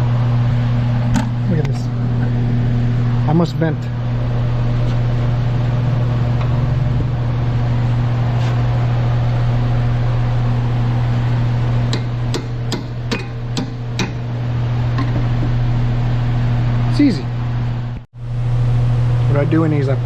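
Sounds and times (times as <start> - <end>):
steady low hum: 0.0 - 20.0
hammer tapping: 11.9 - 14.2.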